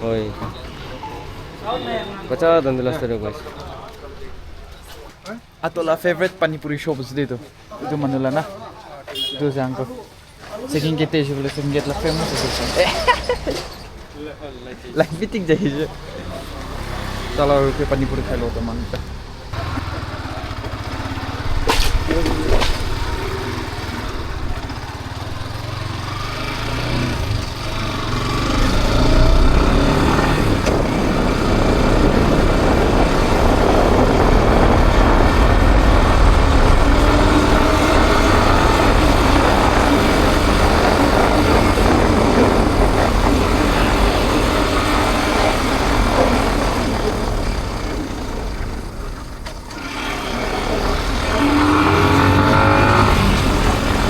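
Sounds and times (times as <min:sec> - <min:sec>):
motorcycle engine running: 0:19.5 - 0:54.0
wind rushing over microphone: 0:27.1 - 0:48.1.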